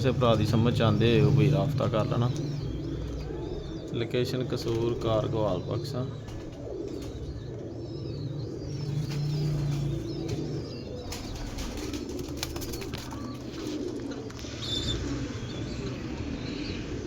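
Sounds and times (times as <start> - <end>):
pigeons cooing: 0.0 - 17.0
pigeon wings flapping: 9.0 - 14.4.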